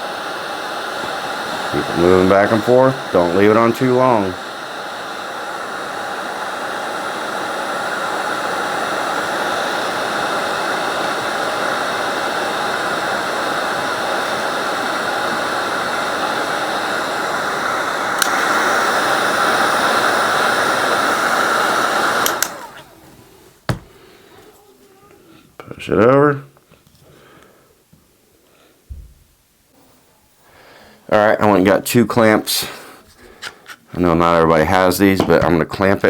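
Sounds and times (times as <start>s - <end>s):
heat gun blowing: 0.0s - 25.2s, 30.6s - 34.2s
heat gun switch click: 18.2s - 18.5s, 22.1s - 22.9s.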